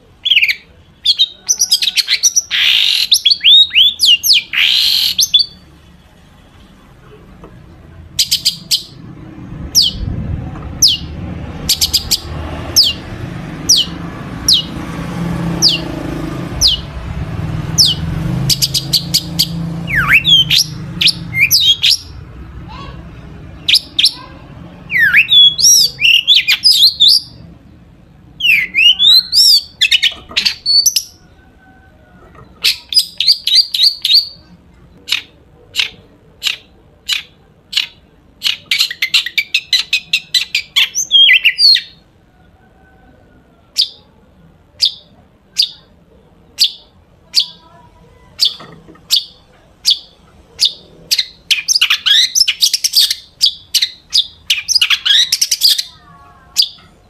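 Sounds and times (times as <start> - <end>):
bird singing mimicked calls: 0.2 - 5.7, 8.2 - 9.0, 9.7 - 10.1, 10.8 - 14.8, 15.5 - 15.9, 16.6 - 17.0, 17.7 - 23.0, 23.6 - 27.5, 28.4 - 31.3, 32.5 - 42.0, 44.8 - 57.0.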